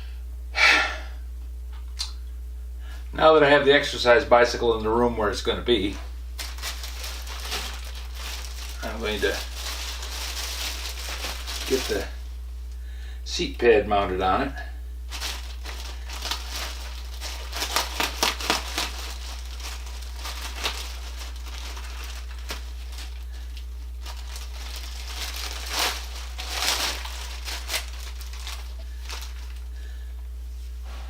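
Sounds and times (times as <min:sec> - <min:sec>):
low electrical hum: 0:00.0 - 0:31.0
plastic packaging crinkling: 0:05.7 - 0:12.4, 0:15.1 - 0:30.0.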